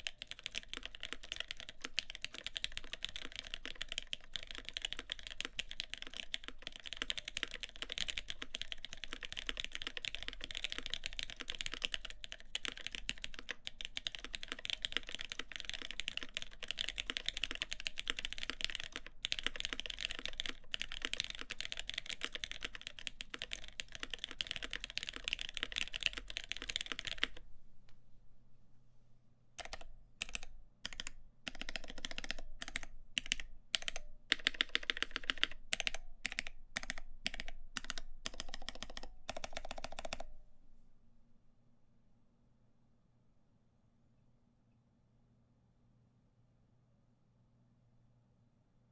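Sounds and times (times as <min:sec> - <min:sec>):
mechanical keyboard typing: 0:00.0 - 0:27.4, 0:29.6 - 0:40.3.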